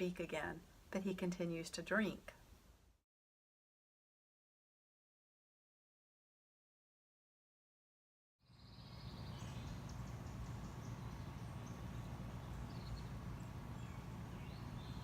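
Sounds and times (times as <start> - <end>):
birds chirping and trilling: 8.5 - 15.0.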